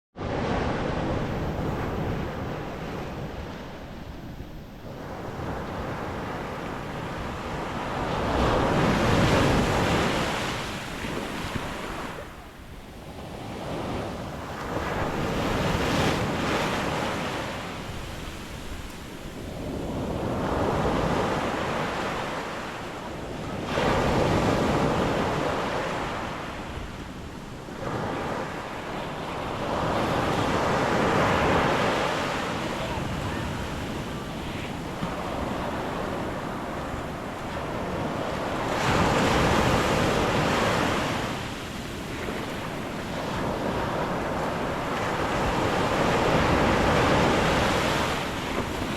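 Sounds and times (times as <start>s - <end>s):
waves breaking on beach: 0.2s - 48.9s.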